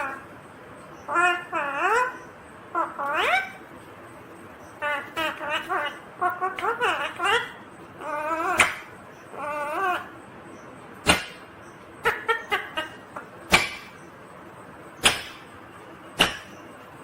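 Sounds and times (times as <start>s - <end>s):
parrot squawking: 0.0s - 0.3s, 1.0s - 3.7s, 4.7s - 10.2s, 11.0s - 14.1s
parrot chirps: 0.0s - 3.7s, 4.6s - 14.2s
parrot wavering call: 1.0s - 3.6s, 4.8s - 10.2s, 11.1s - 14.0s.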